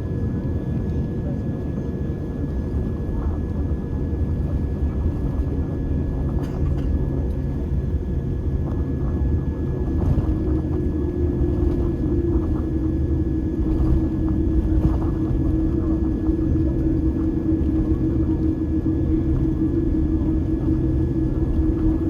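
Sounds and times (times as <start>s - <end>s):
jet engines rumbling: 0.2s - 22.0s
steady whine: 1.2s - 22.0s
low hum: 1.8s - 22.0s.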